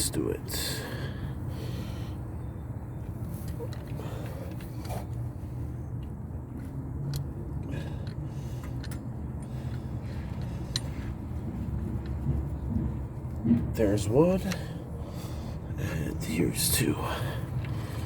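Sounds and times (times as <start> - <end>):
low background rumble: 0.0 - 18.0
light metallic clicks and scrapes: 8.0 - 12.9.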